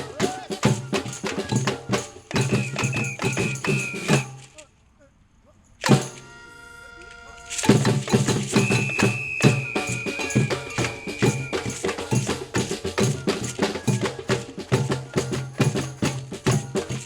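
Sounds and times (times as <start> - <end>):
percussion group playing drums: 0.0 - 4.5, 5.8 - 17.0
high held tone: 6.1 - 7.7, 8.5 - 12.0.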